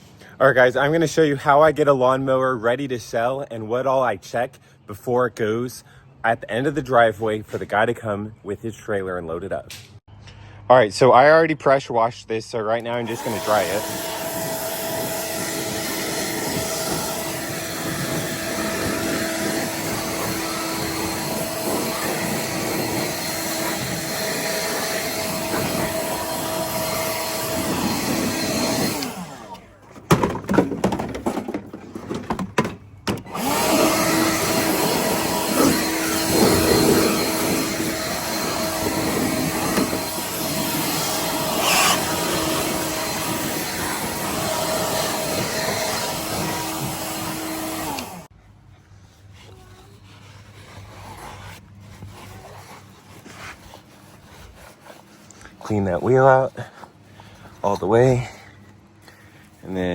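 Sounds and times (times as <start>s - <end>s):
blower motor whine and air rush: 12.9s - 30.3s, 33.1s - 48.3s.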